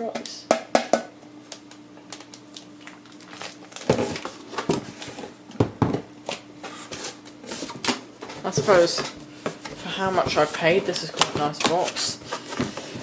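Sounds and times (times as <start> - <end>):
packaging crinkling and rustling: 2.1 - 5.3.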